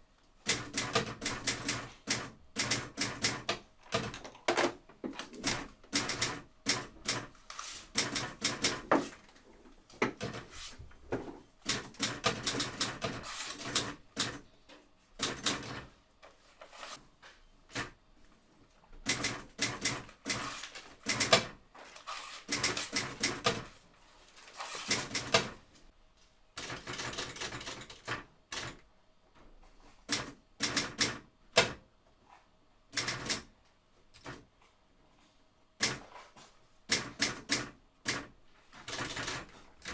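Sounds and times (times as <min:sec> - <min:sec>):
typewriter key strikes: 0:19.1 - 0:21.5.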